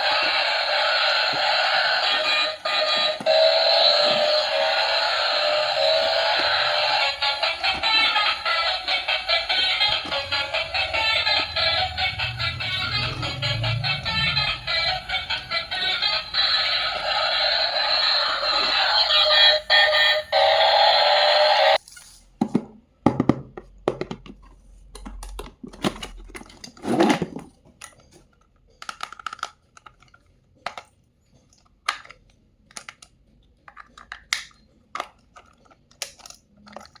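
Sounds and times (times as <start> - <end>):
background music: 4.1 - 17.7.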